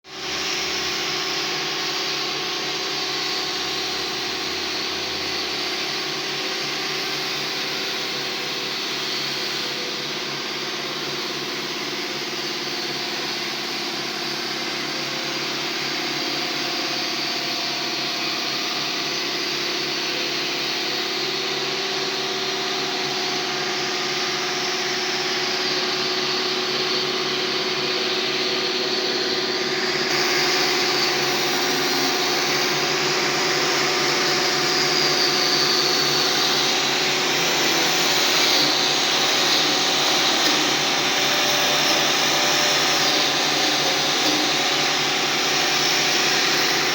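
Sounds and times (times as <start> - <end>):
power tool grinding metal: 0.1 - 46.9.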